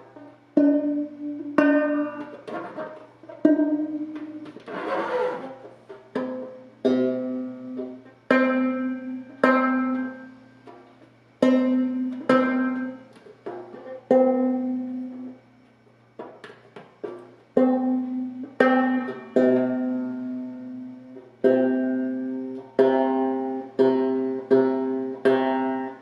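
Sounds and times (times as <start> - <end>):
banjo notes plucked: 0.0 - 15.3, 17.0 - 26.0
scratchy strum: 0.0 - 15.4, 16.2 - 26.0.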